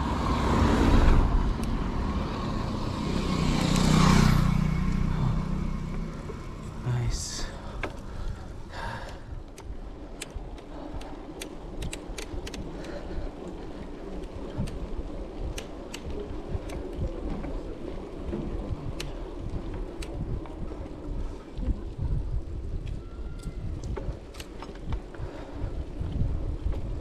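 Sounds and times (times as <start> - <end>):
wind rumbling on microphone: 0.0 - 27.0
sharp ticks and clicks: 8.7 - 13.1, 14.2 - 14.8, 15.4 - 16.9.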